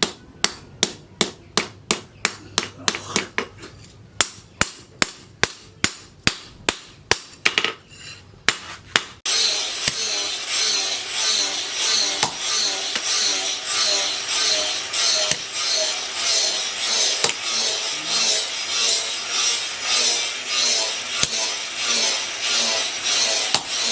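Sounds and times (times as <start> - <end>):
harsh rasping metalwork noise: 7.8 - 23.9
hammer striking steel on anvil: 11.4 - 23.9.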